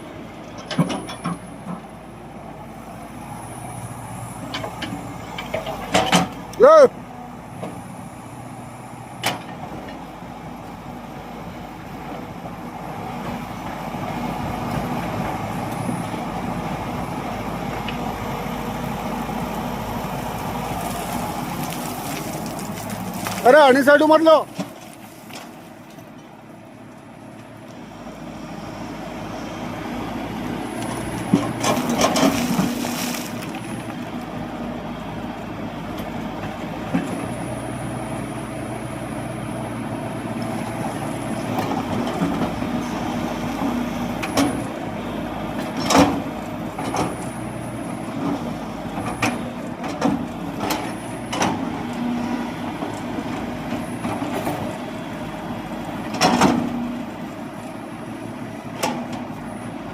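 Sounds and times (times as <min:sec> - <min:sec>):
diesel engine humming: 0:00.0 - 0:59.9.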